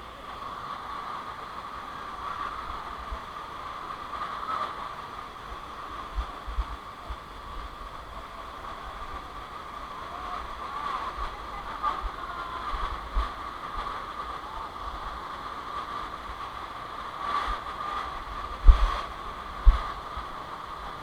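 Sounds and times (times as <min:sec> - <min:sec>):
wind buffeting microphone: 0:17.3 - 0:21.0.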